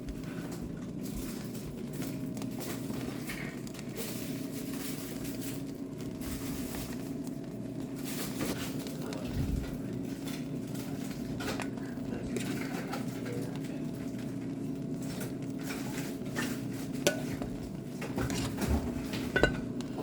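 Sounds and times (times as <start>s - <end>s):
electric cooker motor hum: 0.0s - 20.0s
rice being stirred and fried: 0.0s - 20.0s
light scraping and clinking: 18.2s - 20.0s.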